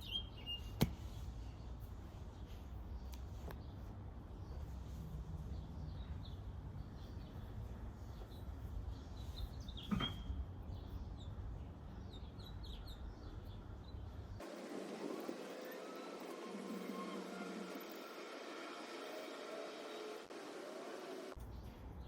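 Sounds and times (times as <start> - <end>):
small birds chirping: 0.0 - 4.8, 5.5 - 14.4.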